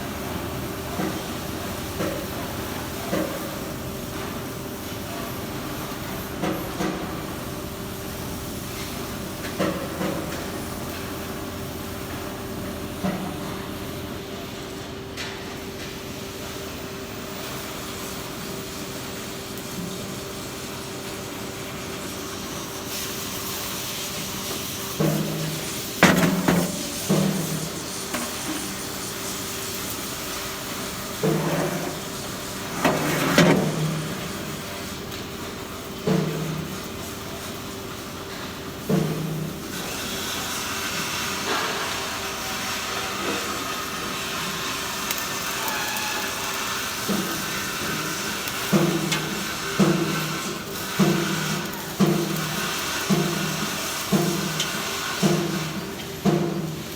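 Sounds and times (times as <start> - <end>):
loud metallic knocks: 26.0 - 27.6.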